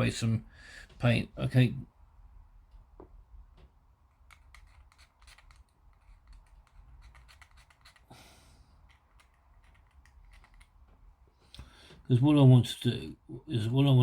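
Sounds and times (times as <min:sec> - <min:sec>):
scraper scratching plastic: 0:04.2 - 0:08.1.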